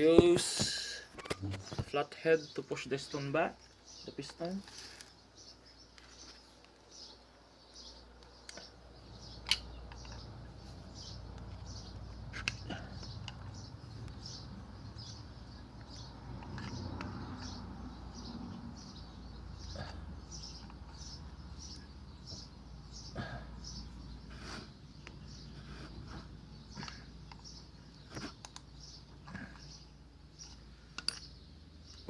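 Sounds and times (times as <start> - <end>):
sharp metallic clicks: 9.3 - 10.3.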